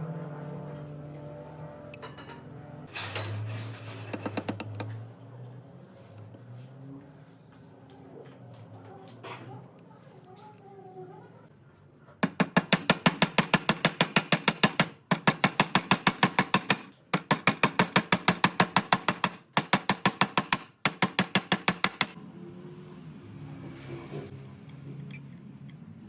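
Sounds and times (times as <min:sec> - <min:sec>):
rapid sharp knocks: 0:12.2 - 0:22.2.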